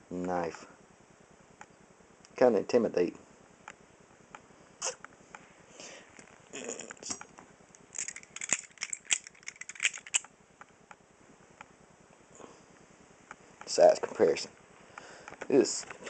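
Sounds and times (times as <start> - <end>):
butterfly knives clicking: 8.0 - 10.3.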